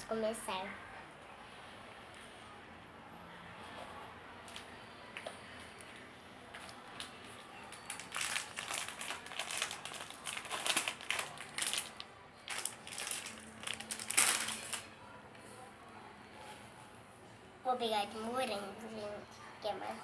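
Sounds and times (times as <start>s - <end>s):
plastic candy bag crinkling: 6.6s - 15.0s.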